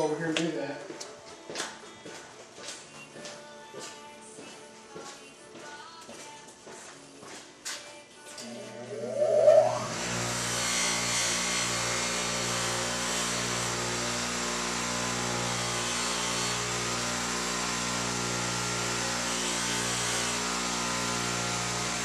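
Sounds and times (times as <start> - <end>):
abrasive wheel motor hum: 8.6 - 10.5.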